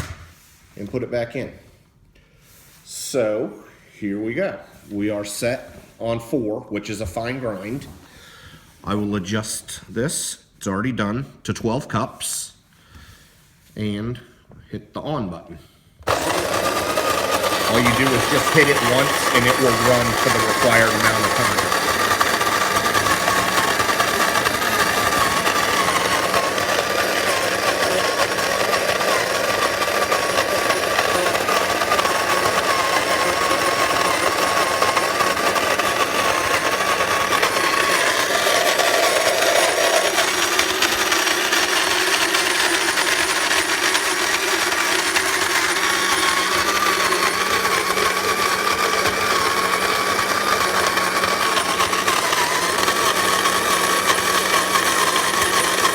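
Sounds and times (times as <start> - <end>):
coffee grinder motor whine: 16.0 - 55.9
coffee beans grinding: 16.1 - 55.9.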